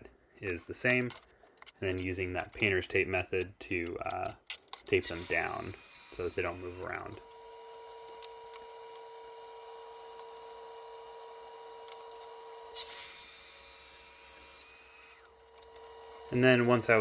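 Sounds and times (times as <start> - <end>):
faint power tool motor: 4.9 - 17.0.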